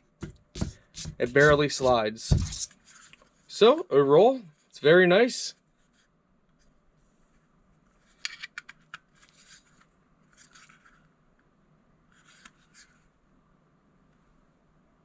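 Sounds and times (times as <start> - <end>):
small clicks of device handling: 8.2 - 9.9.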